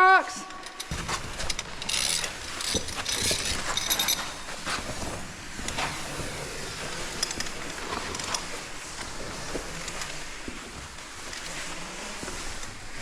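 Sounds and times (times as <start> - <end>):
metallic gear clicks and scrapes: 0.6 - 5.0
rope hissing through brake: 1.9 - 10.5.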